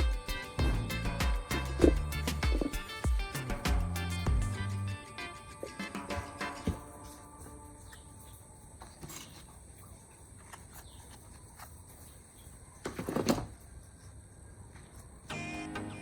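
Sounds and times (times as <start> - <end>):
background music: 0.0 - 8.6, 15.3 - 16.0.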